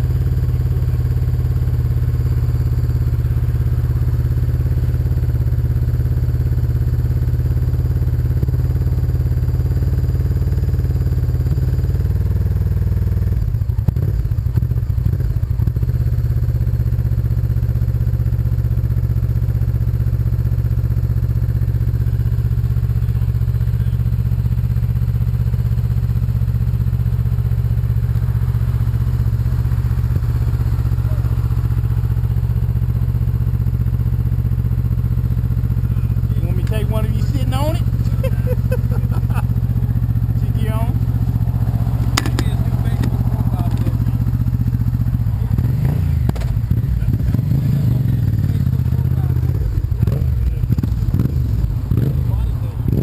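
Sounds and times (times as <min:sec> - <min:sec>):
motorcycle engine idling: 0:00.0 - 0:53.0
uneven thumps and clatter: 0:42.0 - 0:43.2, 0:46.2 - 0:46.7.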